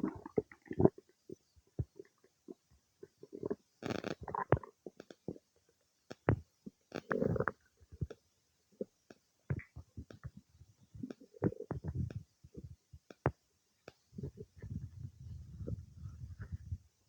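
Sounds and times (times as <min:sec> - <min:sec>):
stomach gurgling: 0:00.0 - 0:08.2, 0:08.8 - 0:17.0.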